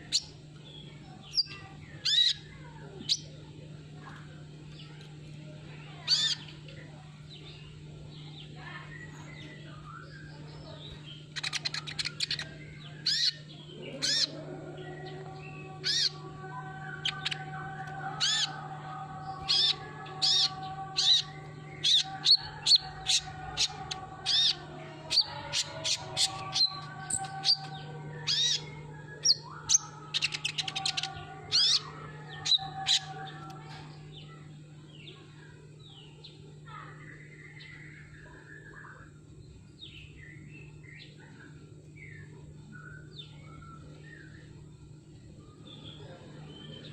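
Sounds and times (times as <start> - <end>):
steady low hum: 0.0 - 46.9
bird high chirps: 6.0 - 6.6, 8.2 - 34.4.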